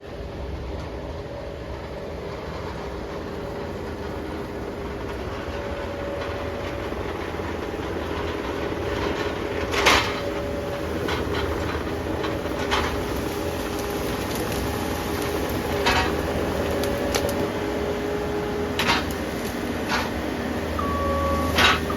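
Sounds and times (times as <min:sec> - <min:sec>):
heavy machinery engine running: 0:00.1 - 0:21.9
loud metallic clank: 0:21.4 - 0:21.9.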